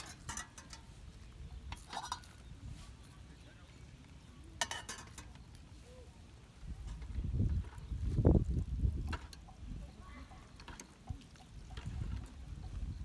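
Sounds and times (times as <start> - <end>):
metal utensil clinking in a pot: 0.0 - 1.0, 1.6 - 2.5, 4.6 - 5.5, 9.1 - 12.8.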